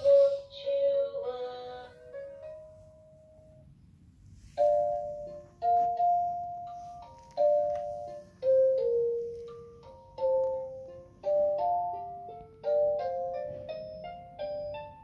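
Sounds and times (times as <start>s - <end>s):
toy playing chiming electronic melody: 4.6s - 15.0s.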